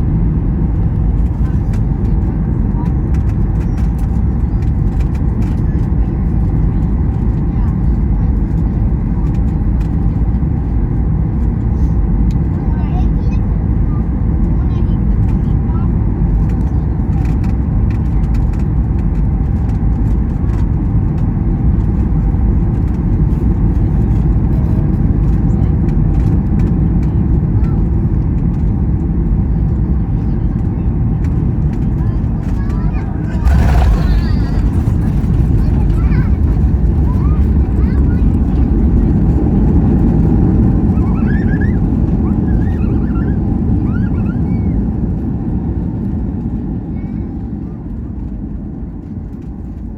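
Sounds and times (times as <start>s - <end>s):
airplane cabin rumble: 0.0s - 49.9s
light rattles: 31.2s - 38.9s.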